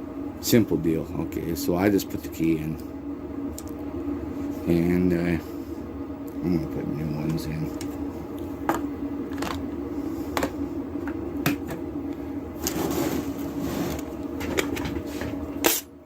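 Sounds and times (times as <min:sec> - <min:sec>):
steady background hum: 0:00.0 - 0:16.0
rustling scrape: 0:12.6 - 0:15.4.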